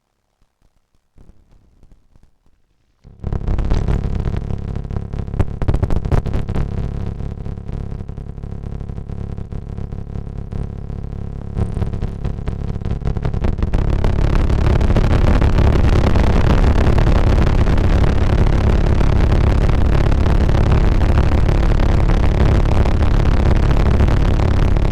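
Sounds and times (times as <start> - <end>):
low rough electronic rumble: 3.1 - 24.9.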